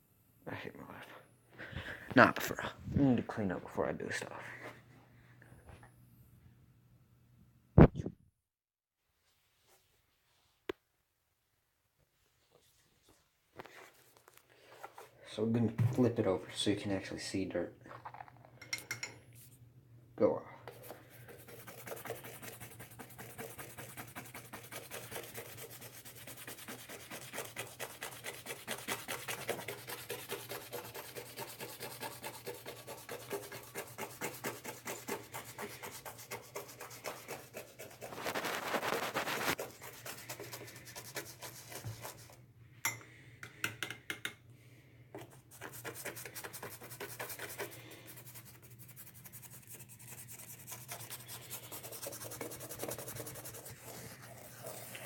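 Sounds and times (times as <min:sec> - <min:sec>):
brush scrubbing leather sneaker: 0:20.8 - 0:42.4, 0:45.5 - 0:55.0.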